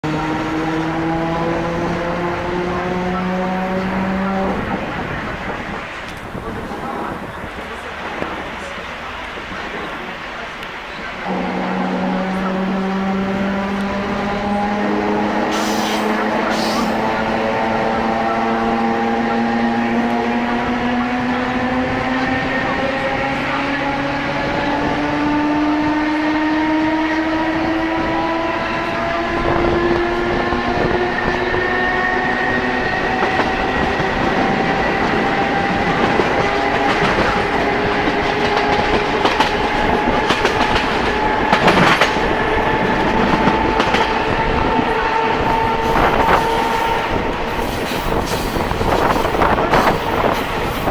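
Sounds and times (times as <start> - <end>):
wheels clicking over rail joints: 33.1 - 50.9.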